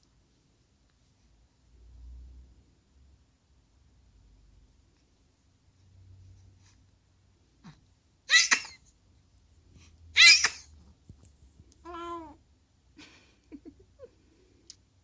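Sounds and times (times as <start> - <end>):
baby sneezing: 7.6 - 8.8, 10.2 - 10.7.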